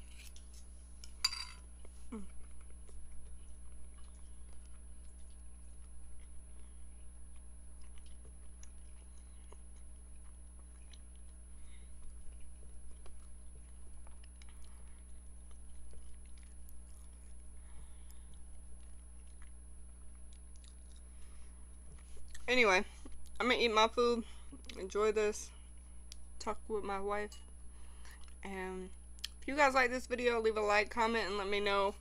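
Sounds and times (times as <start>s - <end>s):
faint chewing: 1.8s - 23.4s.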